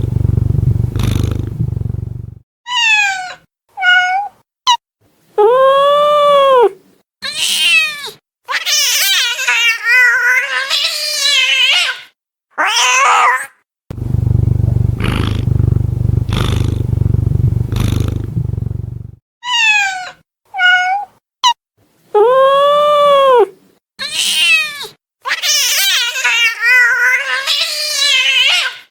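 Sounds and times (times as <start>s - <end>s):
cat growling: 0.0s - 2.4s, 12.6s - 19.2s
cat meowing: 2.7s - 4.8s, 7.2s - 13.6s, 19.4s - 21.1s, 24.0s - 24.9s
cat yowling: 7.2s - 13.6s.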